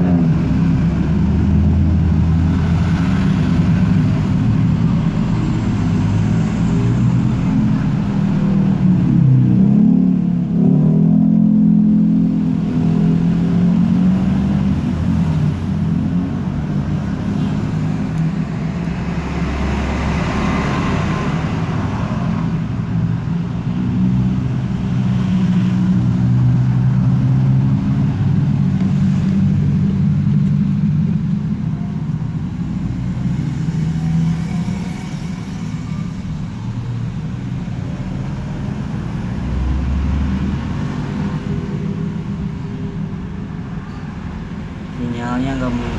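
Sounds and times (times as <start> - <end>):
motor vehicle engine running: 11.3 - 45.9.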